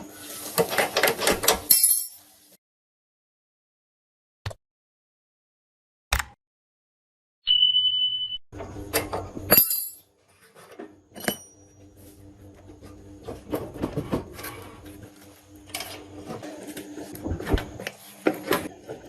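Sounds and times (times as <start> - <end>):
metal tools clinking and knocking: 9.5 - 10.0.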